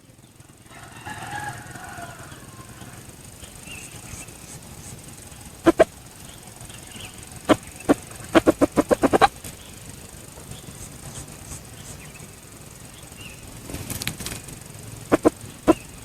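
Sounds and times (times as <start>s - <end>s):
rustle: 0.0s - 16.0s
junglefowl sharp pulses: 3.7s - 6.0s, 7.5s - 9.6s, 15.1s - 16.0s.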